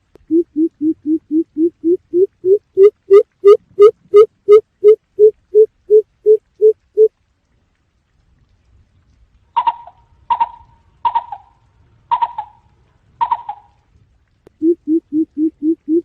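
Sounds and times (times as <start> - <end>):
bird deep hoots: 0.3 - 3.2, 14.6 - 16.0.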